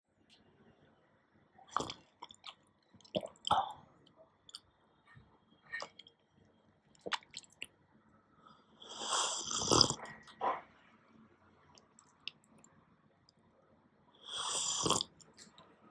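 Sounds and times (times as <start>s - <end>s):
person slurping a drink: 1.8s - 2.0s, 8.9s - 10.3s, 14.3s - 15.1s.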